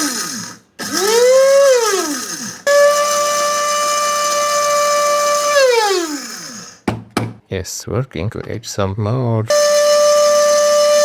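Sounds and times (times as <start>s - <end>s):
electric grinder motor whining: 0.0s - 6.8s, 9.5s - 11.0s.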